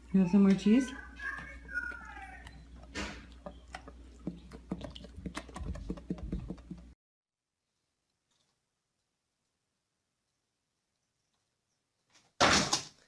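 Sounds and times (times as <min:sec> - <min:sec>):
pet chewing: 0:00.4 - 0:07.0.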